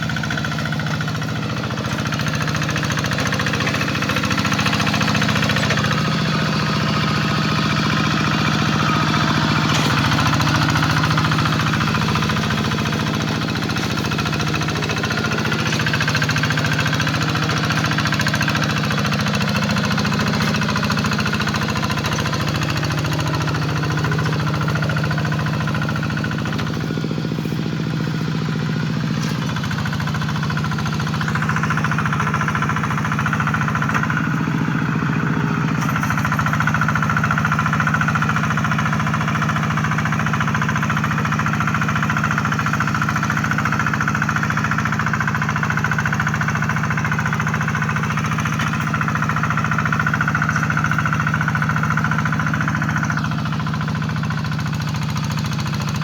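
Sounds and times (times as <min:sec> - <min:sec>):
tractor engine running under load: 0:00.0 - 0:56.0.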